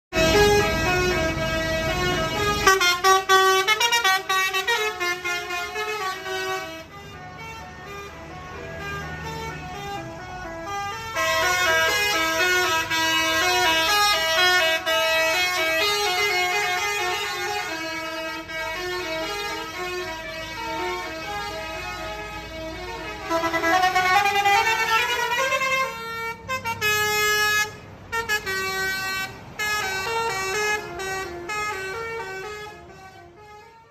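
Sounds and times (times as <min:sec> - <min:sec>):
multi-tone musical air horns: 0:00.1 - 0:33.9.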